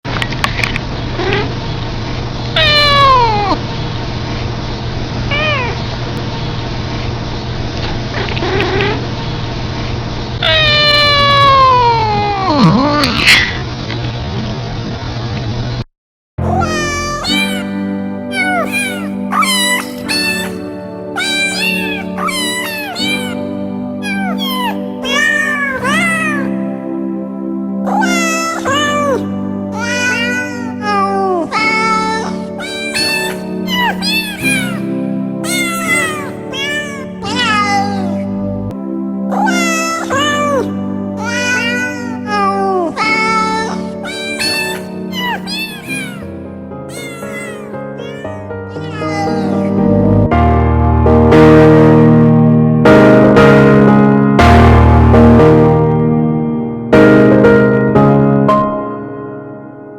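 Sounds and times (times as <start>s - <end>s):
cat yawning call: 2.6s - 3.6s, 10.4s - 12.9s, 16.5s - 26.7s, 27.8s - 38.4s, 39.3s - 49.8s
background music sustained notes: 16.4s - 45.5s, 47.6s - 59.9s.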